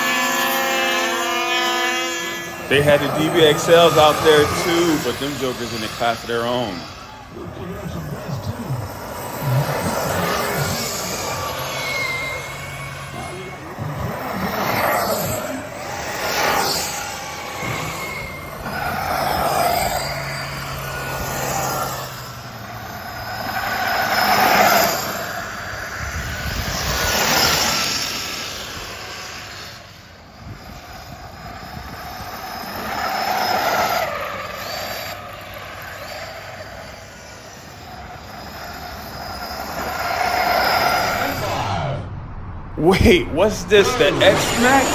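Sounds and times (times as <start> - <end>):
rc car engines revving and whining: 0.0 - 42.0.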